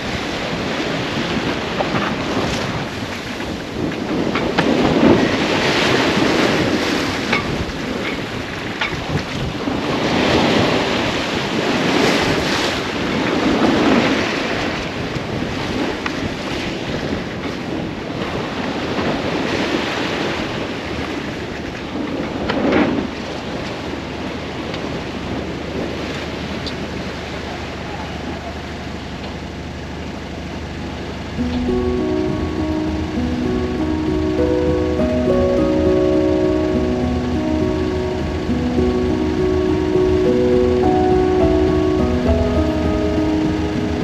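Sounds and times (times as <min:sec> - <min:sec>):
waves washing past boat: 0:00.0 - 0:27.8.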